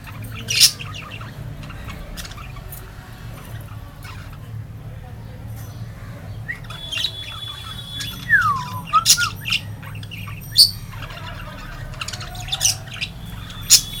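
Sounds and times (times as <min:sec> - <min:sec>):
budgerigars calling: 0:00.0 - 0:04.5, 0:05.9 - 0:14.0
sharp squawks and chirps: 0:06.5 - 0:14.0
falling whistle: 0:08.3 - 0:09.4.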